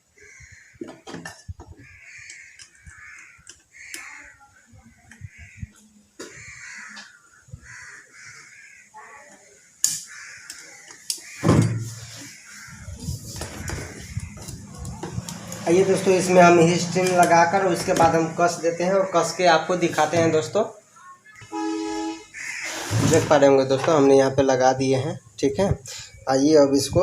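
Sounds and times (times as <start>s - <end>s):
bird cawing: 0.2s - 1.0s, 1.7s - 4.6s, 5.2s - 20.1s, 21.0s - 23.0s.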